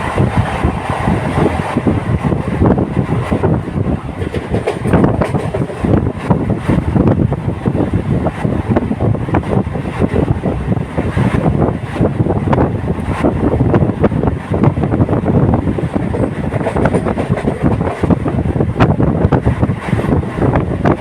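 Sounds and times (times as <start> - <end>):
train wheels rattling on track: 0.0 - 21.0
wind buffeting microphone: 0.0 - 21.0.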